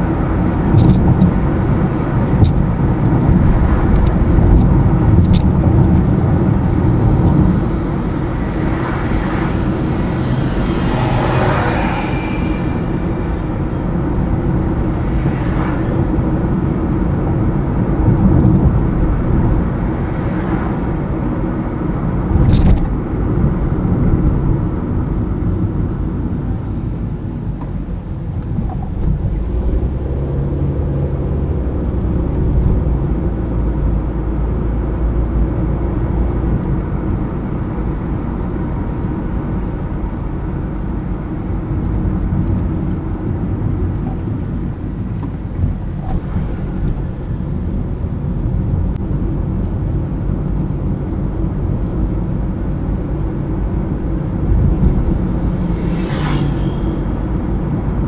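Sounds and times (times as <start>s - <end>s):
car engine hum: 0.0s - 58.0s
road and tyre noise: 0.0s - 58.0s.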